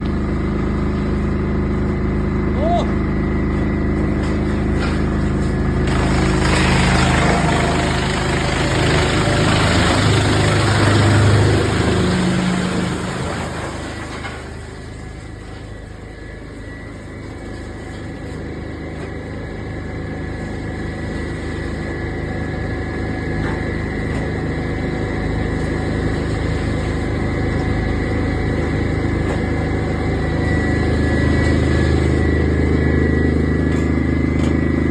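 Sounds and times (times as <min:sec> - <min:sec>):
wood chipper engine running: 0:00.0 - 0:34.9
loud rough noise: 0:04.0 - 0:15.5.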